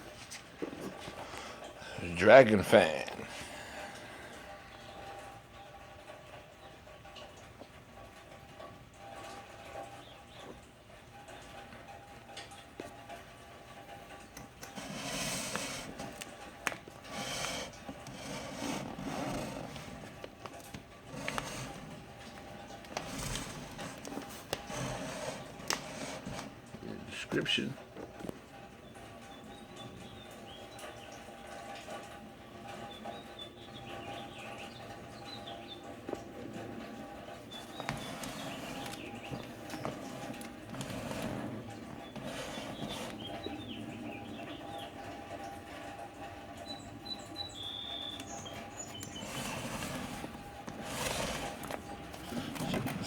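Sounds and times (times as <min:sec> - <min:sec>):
small birds chirping: 0:04.0 - 0:07.6, 0:09.8 - 0:11.6, 0:28.7 - 0:45.6, 0:46.5 - 0:53.0
cardboard boxes rustling: 0:14.7 - 0:26.6, 0:37.5 - 0:43.7, 0:48.8 - 0:53.0.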